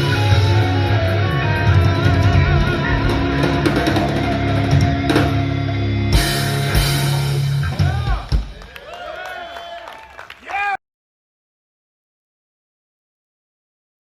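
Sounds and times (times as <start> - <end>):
rock band playing live: 0.0 - 8.7.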